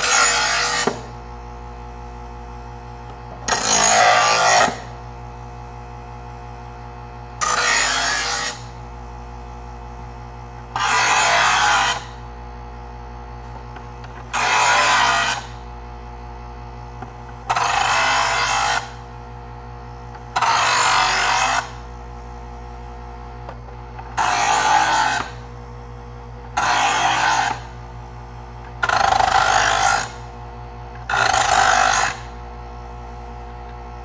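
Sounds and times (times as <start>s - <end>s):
knife grinding rasp: 0.0s - 1.1s, 3.5s - 4.9s, 7.4s - 8.7s, 10.8s - 12.1s, 14.3s - 15.5s, 17.5s - 19.0s, 20.4s - 21.8s, 24.2s - 25.4s, 26.6s - 27.7s, 28.8s - 30.2s, 31.1s - 32.3s
knife sharpener motor running: 0.0s - 1.1s, 3.5s - 4.8s, 7.4s - 8.7s, 10.8s - 12.1s, 14.3s - 15.5s, 17.4s - 19.0s, 20.3s - 21.9s, 24.1s - 25.4s, 26.6s - 27.7s, 28.7s - 30.1s, 31.0s - 32.3s.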